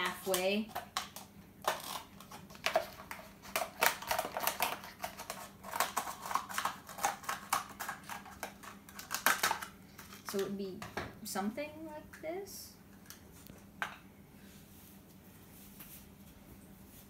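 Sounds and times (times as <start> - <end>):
scissors cutting plastic cup: 0.3 - 9.7.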